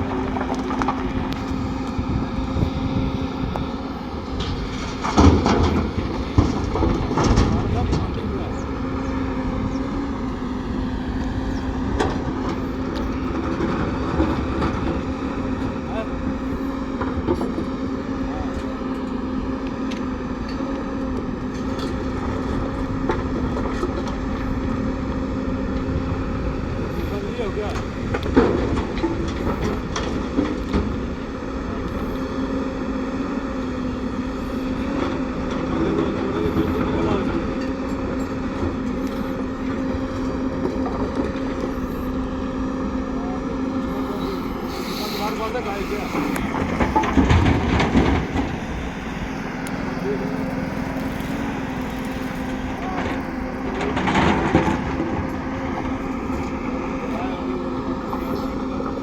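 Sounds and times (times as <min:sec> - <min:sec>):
heavy diesel engine rumbling: 0:00.0 - 0:59.0.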